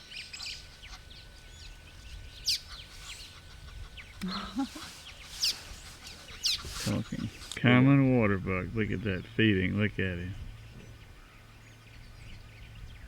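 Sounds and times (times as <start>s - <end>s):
high-pitched bird chirps: 2.3s - 3.4s.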